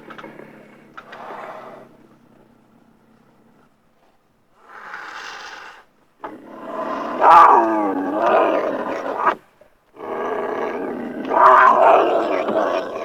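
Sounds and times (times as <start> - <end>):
beast growling: 6.2 - 9.4, 10.0 - 13.0.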